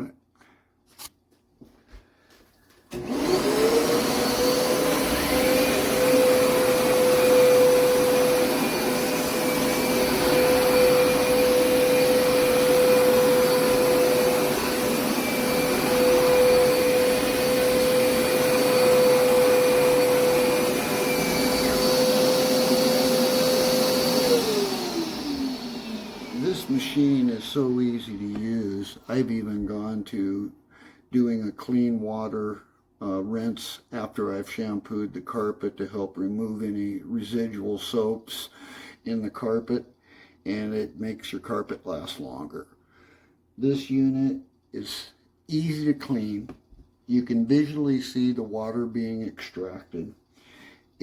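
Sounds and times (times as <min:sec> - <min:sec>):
carpet cleaner motor whine: 0:02.9 - 0:28.8.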